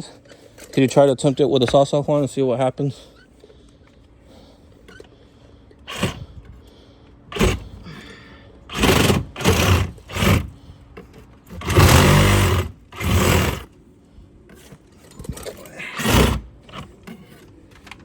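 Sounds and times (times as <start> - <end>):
saw cutting nails: 5.9 - 6.2, 7.3 - 7.7, 8.7 - 10.6, 11.5 - 13.7, 16.0 - 16.9.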